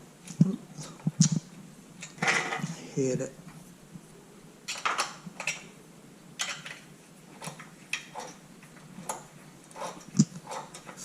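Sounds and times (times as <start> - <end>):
metal tools and bolts clinking: 4.7 - 5.7, 6.4 - 8.4.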